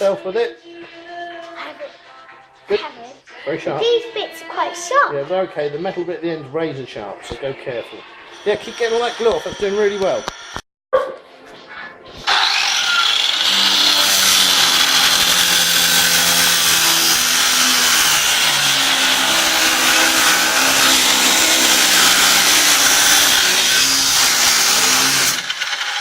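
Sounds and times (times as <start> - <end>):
power tool cutting: 8.4 - 10.6, 12.2 - 26.0.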